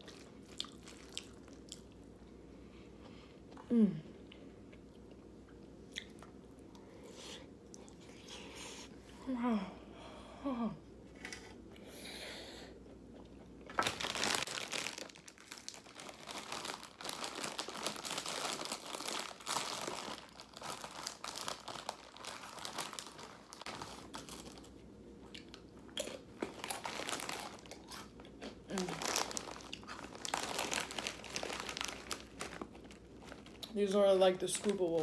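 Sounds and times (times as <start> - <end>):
plastic chip bag crinkling: 13.7 - 24.8, 25.4 - 35.0.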